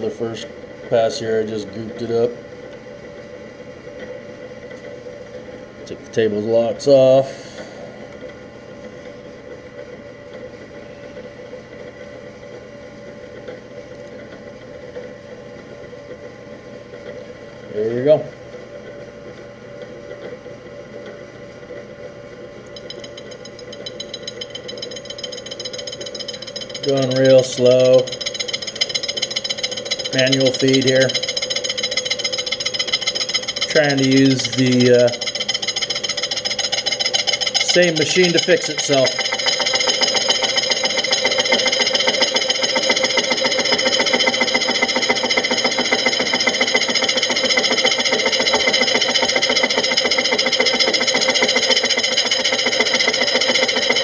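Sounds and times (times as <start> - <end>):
milling machine spindle running: 22.7 - 54.0
saw teeth rattling on metal: 22.8 - 54.0.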